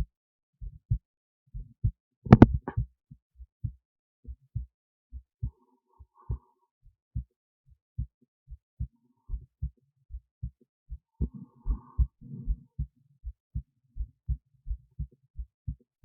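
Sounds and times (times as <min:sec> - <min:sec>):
heartbeat thuds: 0:00.6 - 0:01.0, 0:02.3 - 0:02.9, 0:08.8 - 0:10.6, 0:11.2 - 0:15.8.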